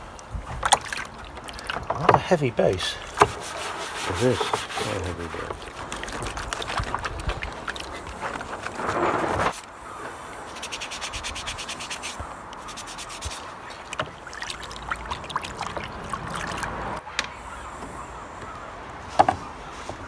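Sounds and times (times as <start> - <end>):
pad scrubbing plastic: 3.0 - 9.7, 10.4 - 15.5.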